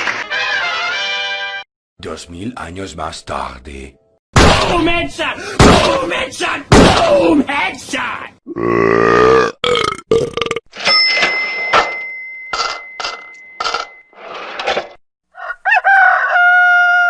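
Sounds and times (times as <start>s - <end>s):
burp-like sound: 8.5s - 10.7s.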